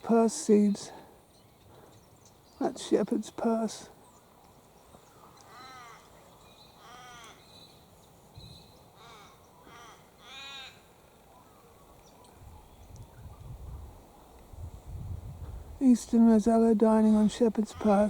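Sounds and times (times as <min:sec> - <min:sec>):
raven cawing: 0:05.2 - 0:06.1, 0:06.8 - 0:07.5, 0:09.0 - 0:10.9.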